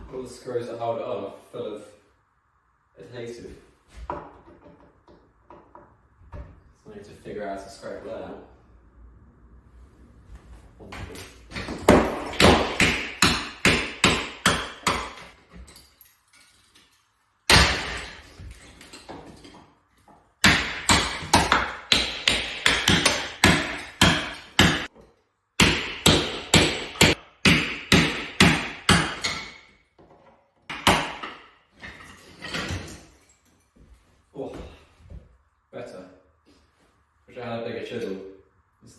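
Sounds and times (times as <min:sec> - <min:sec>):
hammer striking chisel: 0:11.7 - 0:15.3, 0:20.4 - 0:24.9, 0:25.6 - 0:29.7.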